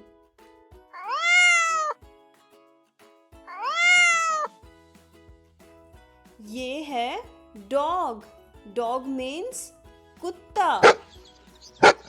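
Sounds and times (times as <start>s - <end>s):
cat meowing: 1.0s - 2.0s, 3.5s - 4.5s.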